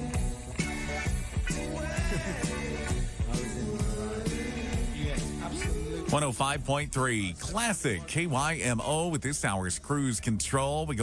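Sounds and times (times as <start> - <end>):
song with steady drum beat: 0.0 - 7.8.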